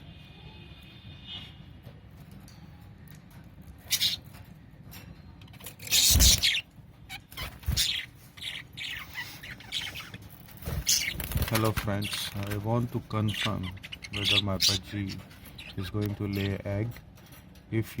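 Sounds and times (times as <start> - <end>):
budgerigars chirping and squawking: 3.8 - 4.4, 5.6 - 17.0.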